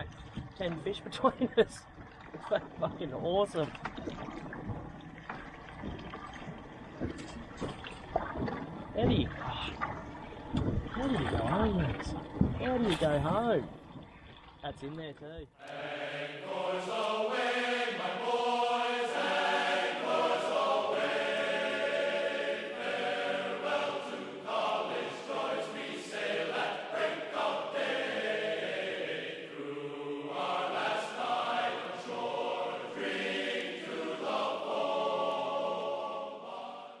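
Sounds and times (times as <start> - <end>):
choir-like sustained voices music: 15.6 - 37.0.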